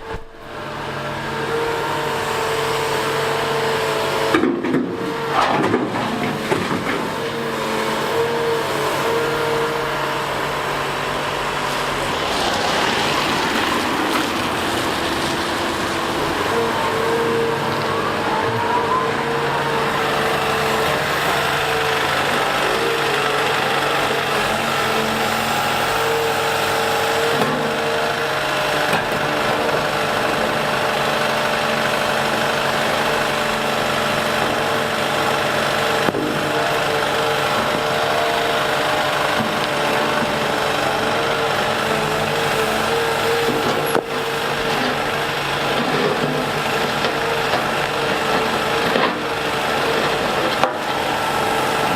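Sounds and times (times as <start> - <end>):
diesel engine running: 0.0 - 51.9
steady whine: 8.9 - 24.8.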